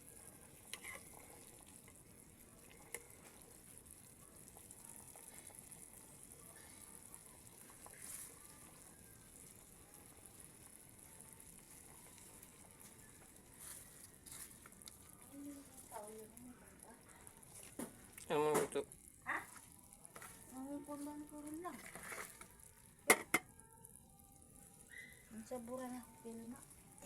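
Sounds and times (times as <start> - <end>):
food hissing in a pot: 0.0 - 27.0.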